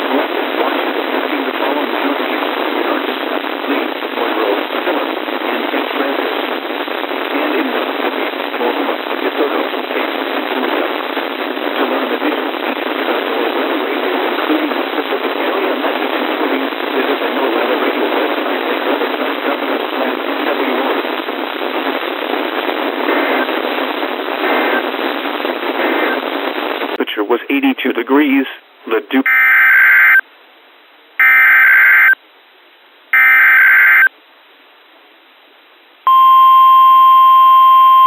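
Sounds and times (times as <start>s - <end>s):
faint broadcast voice: 0.0s - 24.9s, 27.0s - 30.2s
radio static hiss: 0.0s - 30.3s, 31.2s - 32.2s, 33.1s - 34.1s.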